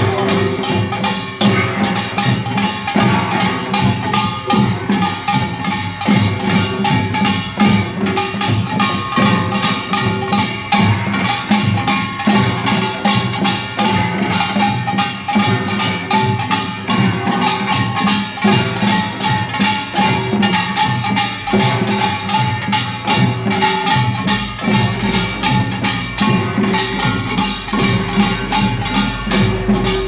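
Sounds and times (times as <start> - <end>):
gongs and drums rapid strikes: 0.0 - 30.0
held pitched notes: 23.8 - 30.0.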